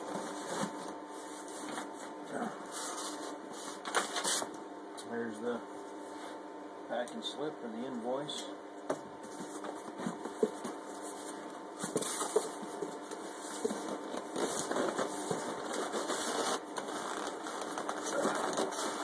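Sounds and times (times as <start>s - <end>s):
cardboard and packing rustling: 0.0s - 4.5s, 9.2s - 19.0s
steady background hum: 0.0s - 19.0s.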